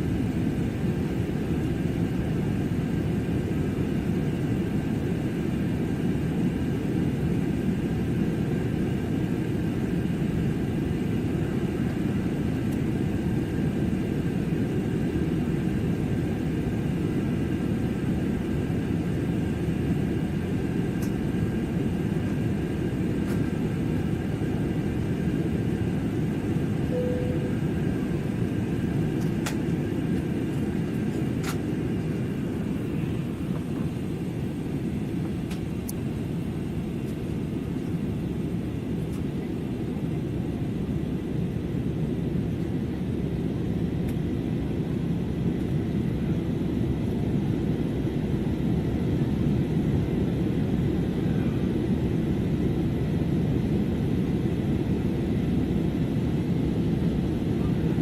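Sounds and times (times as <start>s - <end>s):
faint steady whine: 0.0s - 53.9s
airliner cabin engine rumble: 0.0s - 58.0s.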